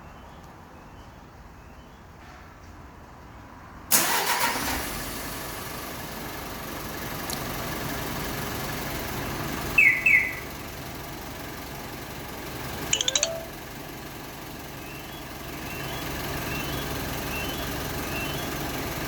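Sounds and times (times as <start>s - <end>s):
diesel engine starting and idling: 3.9s - 12.8s, 13.7s - 19.0s
short electronic chirps: 13.0s - 13.6s.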